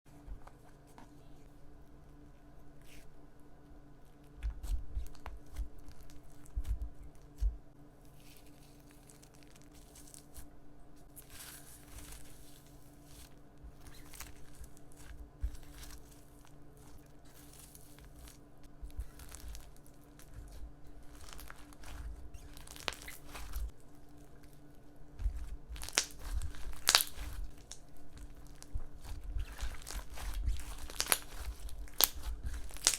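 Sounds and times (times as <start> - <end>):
slime crackling and popping: 13.8 - 23.8, 25.2 - 32.9.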